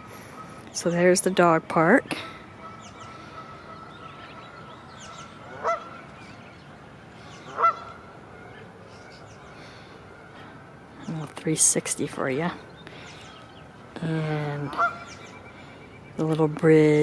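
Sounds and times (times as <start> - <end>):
small birds chirping: 2.3 - 17.0
goose honking: 2.6 - 6.1, 7.4 - 8.6, 14.7 - 15.2.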